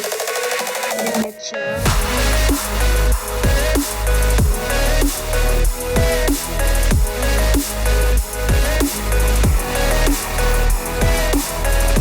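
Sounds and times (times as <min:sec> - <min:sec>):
electronic dance music: 0:00.0 - 0:12.0
deep bass hits sliding down: 0:01.9 - 0:07.8.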